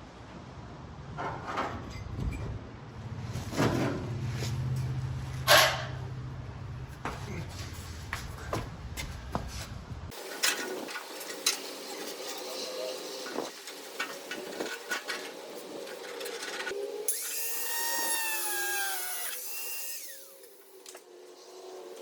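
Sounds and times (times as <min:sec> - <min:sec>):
tools and parts clicking and scraping: 0:04.6 - 0:06.0, 0:10.1 - 0:17.3
power drill whining: 0:17.1 - 0:20.9.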